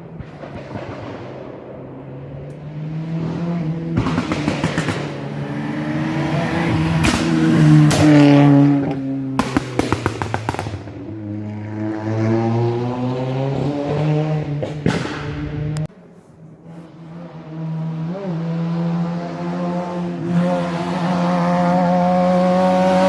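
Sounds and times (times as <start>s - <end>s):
rally car engine accelerating: 0.0s - 15.9s, 16.5s - 23.0s
exhaust pops and bangs: 0.1s - 1.9s, 3.2s - 11.4s, 13.6s - 15.9s.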